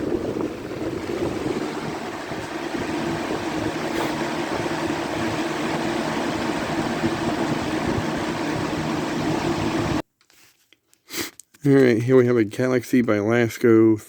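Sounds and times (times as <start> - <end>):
fan air rushing: 0.0 - 10.0
low motor hum: 0.0 - 10.0.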